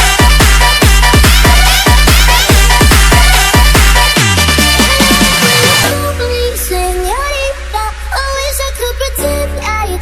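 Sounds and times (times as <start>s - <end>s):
heavy drum hits: 0.0s - 5.8s.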